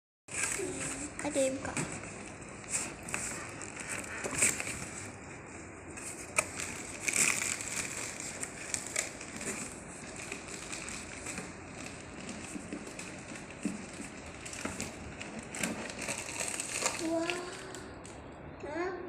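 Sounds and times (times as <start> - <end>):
packaging crinkling and rustling: 0.3 - 18.2.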